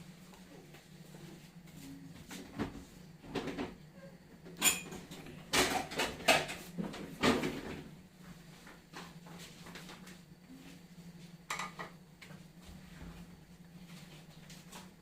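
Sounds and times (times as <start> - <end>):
steady low hum: 0.0 - 15.0
utensils and dishes clinking: 4.6 - 6.6.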